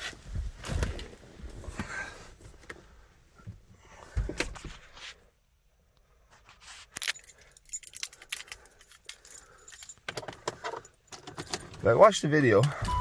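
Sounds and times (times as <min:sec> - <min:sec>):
small metal objects clinking: 0:07.0 - 0:10.0.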